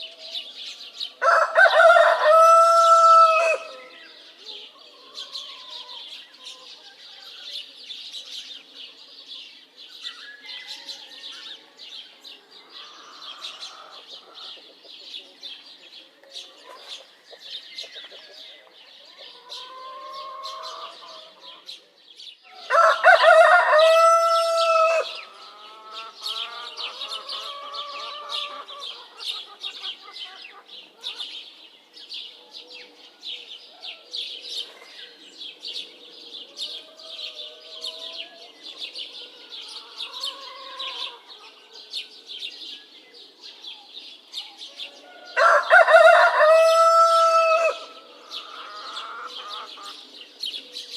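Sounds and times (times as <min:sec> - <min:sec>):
small birds chirping: 0:00.0 - 0:50.9
rooster crowing: 0:01.2 - 0:04.0, 0:22.6 - 0:28.8, 0:45.0 - 0:49.5.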